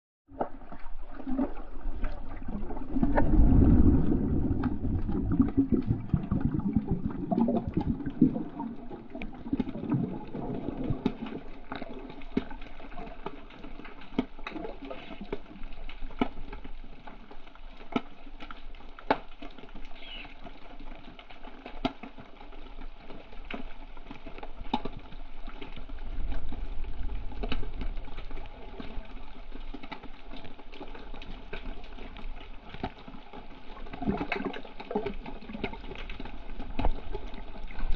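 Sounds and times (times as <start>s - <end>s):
low water surge: 0.3s - 13.2s
muffled water sloshing and gurgling: 0.3s - 37.9s
small clicks and crackles: 0.3s - 37.9s.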